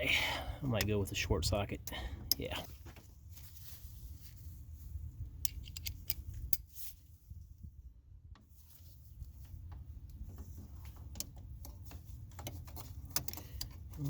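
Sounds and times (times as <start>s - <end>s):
metal sockets clinking: 5.4s - 6.7s, 10.9s - 14.0s.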